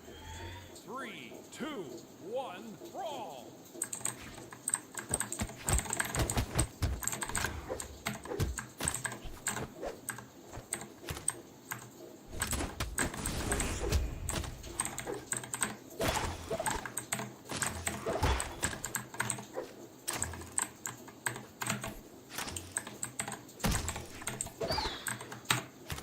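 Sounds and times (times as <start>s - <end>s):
mechanical keyboard typing: 3.8s - 13.4s, 14.2s - 15.9s, 16.6s - 26.0s.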